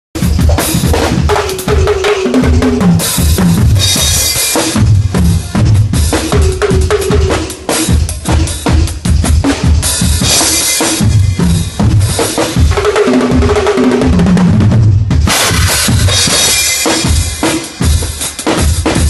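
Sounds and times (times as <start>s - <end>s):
bass drum and snare hits: 0.2s - 19.0s
cymbal crash: 15.2s - 18.0s.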